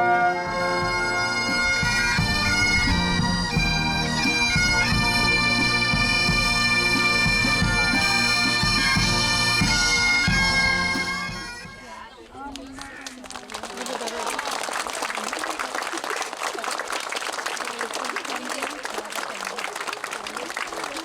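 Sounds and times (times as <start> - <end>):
bagpipes playing a tune: 0.0 - 12.0
drums beating: 0.5 - 11.9.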